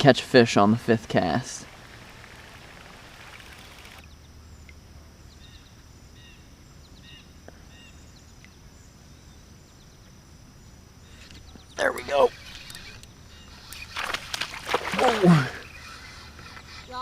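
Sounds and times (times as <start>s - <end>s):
small bird chirping: 3.4s - 17.0s.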